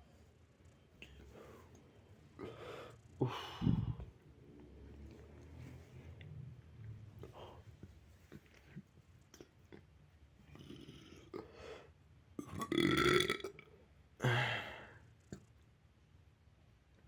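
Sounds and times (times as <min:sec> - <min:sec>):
boy burping: 0:12.4 - 0:13.6.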